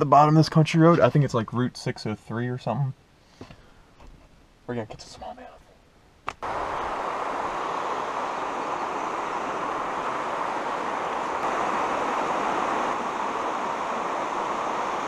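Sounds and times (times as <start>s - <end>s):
river water rushing: 6.4s - 15.0s.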